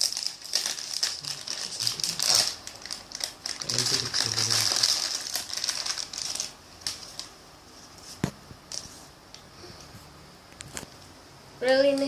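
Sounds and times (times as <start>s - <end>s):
plastic wrapper crinkling: 0.0s - 7.4s.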